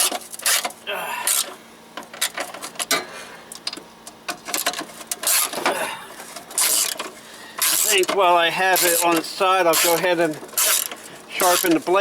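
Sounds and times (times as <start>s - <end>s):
metal parts clinking: 6.6s - 8.2s, 10.6s - 11.8s.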